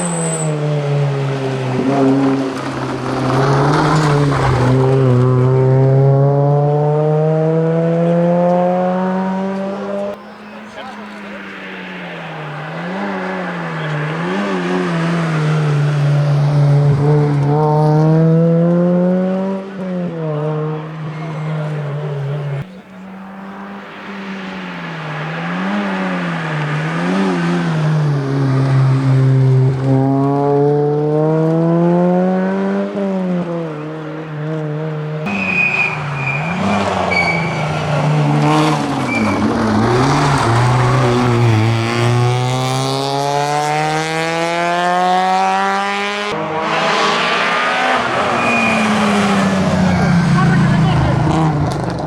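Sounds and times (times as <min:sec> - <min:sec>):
tyre squeals: 0:00.0 - 0:01.9, 0:35.2 - 0:41.9, 0:47.0 - 0:51.6
rally car engine revving: 0:00.0 - 0:52.0.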